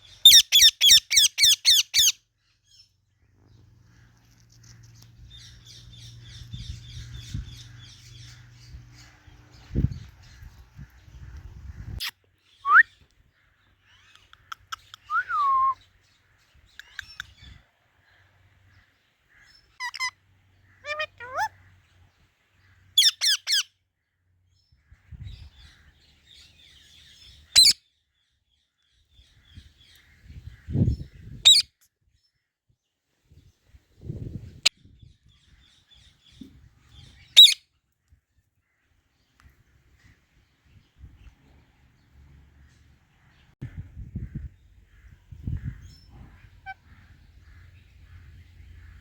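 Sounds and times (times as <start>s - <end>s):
parrot chirps and squawks: 0.2s - 2.2s, 19.5s - 21.8s, 22.9s - 23.7s, 27.6s - 27.8s, 31.4s - 31.7s, 37.0s - 37.6s, 45.8s - 47.6s.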